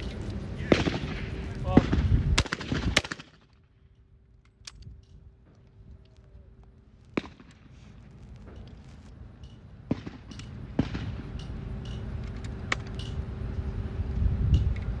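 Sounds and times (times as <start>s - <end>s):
faint steady hum: 0.0s - 15.0s
shotgun shots: 0.6s - 3.5s, 7.2s - 7.8s, 9.8s - 11.3s.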